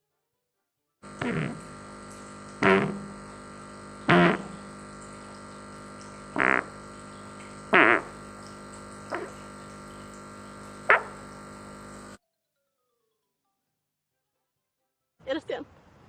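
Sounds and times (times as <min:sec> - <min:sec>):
steady hum: 0:01.0 - 0:12.2.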